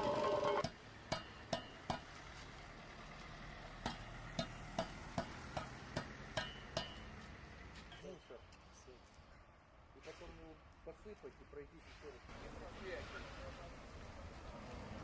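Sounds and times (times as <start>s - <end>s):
hand tool knocking on asphalt: 0.6s - 2.1s, 3.8s - 7.1s.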